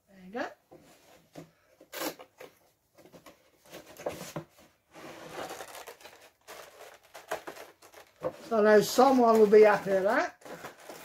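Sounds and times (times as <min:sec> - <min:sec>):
plastic and cardboard rustling: 0:00.7 - 0:11.0.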